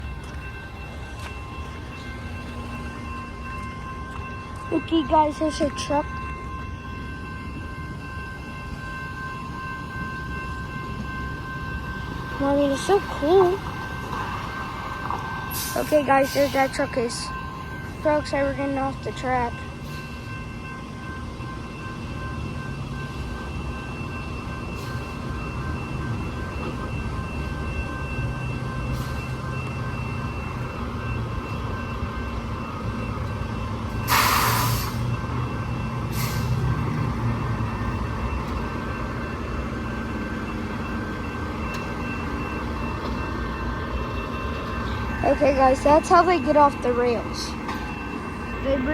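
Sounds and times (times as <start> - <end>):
sharp air hiss: 34.1 - 35.1.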